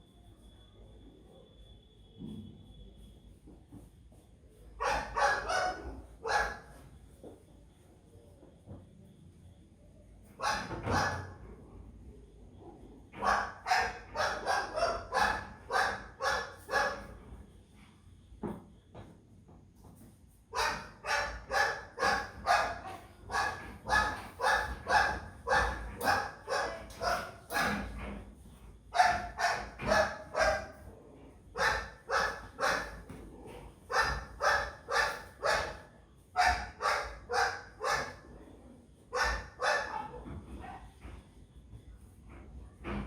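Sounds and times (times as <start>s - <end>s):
dog barking: 4.8s - 6.8s, 10.4s - 11.4s, 13.2s - 17.2s, 20.5s - 28.0s, 28.9s - 30.9s, 31.6s - 33.1s, 33.8s - 38.5s, 39.1s - 40.8s.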